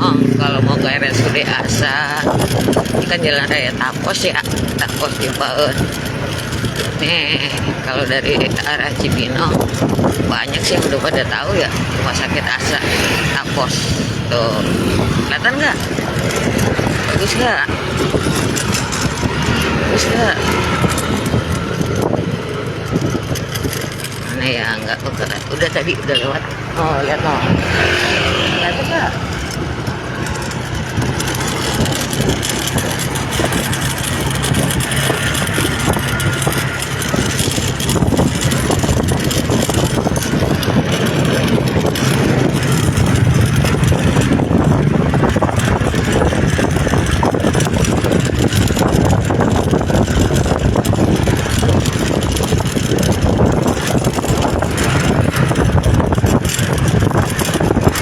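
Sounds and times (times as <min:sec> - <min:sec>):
road and wind noise: 0:00.0 - 0:58.0
vehicle engine hum: 0:00.0 - 0:58.0.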